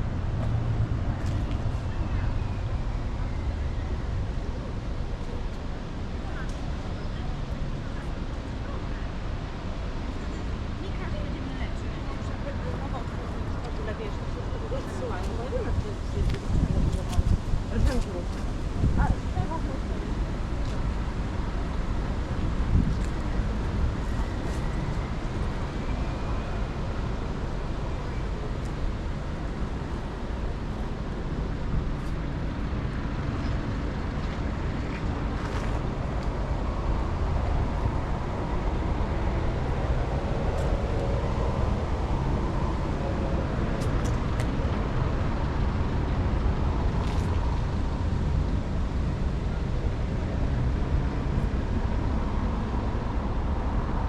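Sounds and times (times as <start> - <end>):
road traffic rumble: 0.0 - 54.0
passers-by talking: 6.1 - 23.3.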